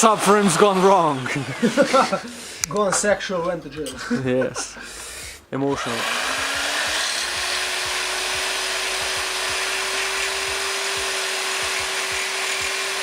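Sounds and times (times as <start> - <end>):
power tool motor whine: 5.2 - 13.0.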